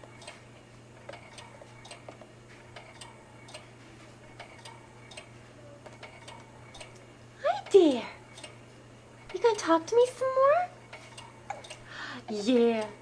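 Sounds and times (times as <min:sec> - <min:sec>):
faint mechanical ticking: 0:00.0 - 0:13.0.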